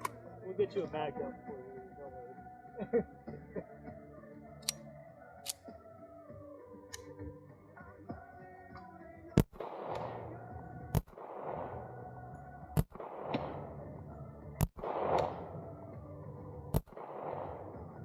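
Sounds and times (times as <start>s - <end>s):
gunshots with echo: 9.4s - 12.1s, 12.8s - 15.8s, 16.7s - 18.0s
bullet striking distant target: 12.8s - 13.8s, 14.6s - 15.6s.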